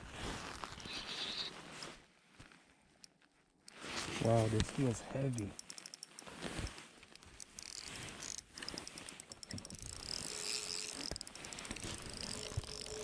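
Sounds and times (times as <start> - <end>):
spinning reel clicking and whirring: 5.4 - 6.2, 7.1 - 13.0.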